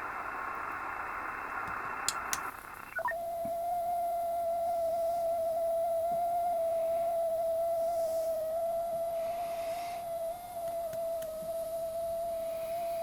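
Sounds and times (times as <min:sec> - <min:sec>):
radio receiver hiss: 0:00.0 - 0:03.2.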